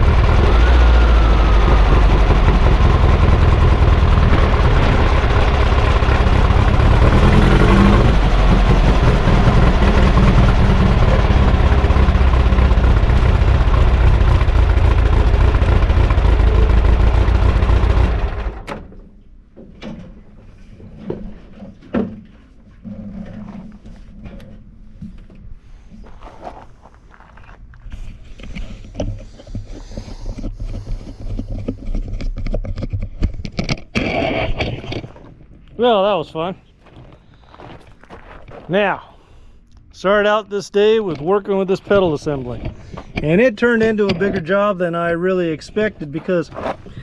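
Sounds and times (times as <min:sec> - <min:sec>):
buggy engine running loud: 0:00.0 - 0:18.8.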